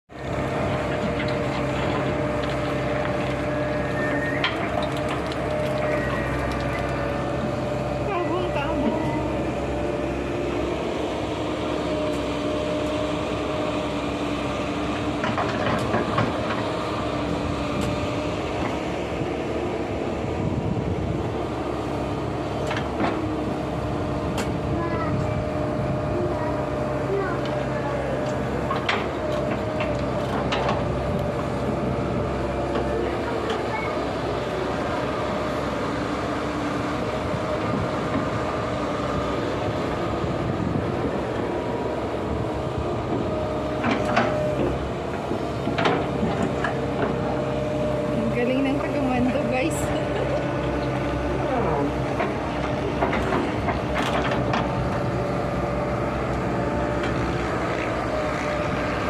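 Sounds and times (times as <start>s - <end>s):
diesel engine running: 0.1s - 59.0s.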